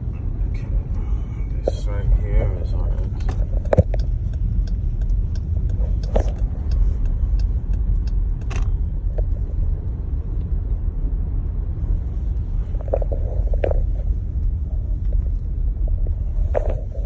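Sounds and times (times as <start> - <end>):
light ticks: 0.8 - 10.8.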